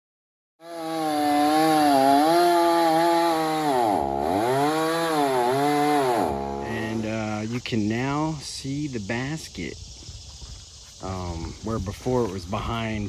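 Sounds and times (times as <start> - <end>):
chainsaw running at high revs: 0.6 - 7.2.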